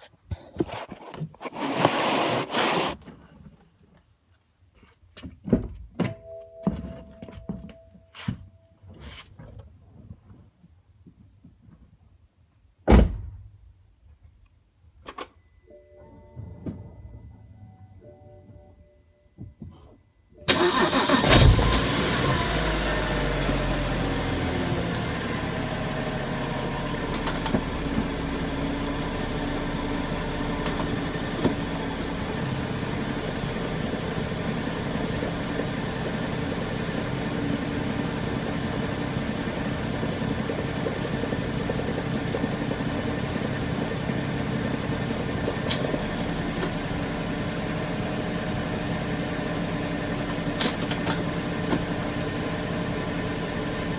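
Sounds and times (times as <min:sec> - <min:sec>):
car engine starting and idling: 0:20.4 - 0:53.9.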